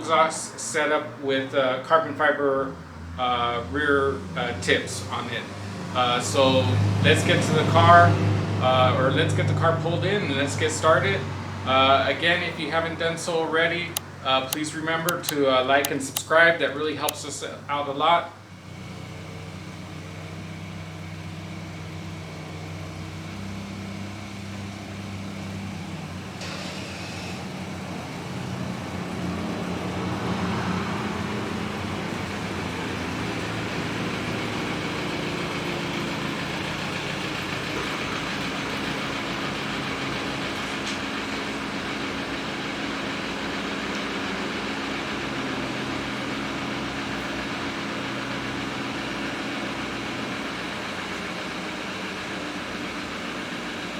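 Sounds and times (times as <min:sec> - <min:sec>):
car engine humming: 0:03.2 - 0:17.4, 0:26.0 - 0:53.9.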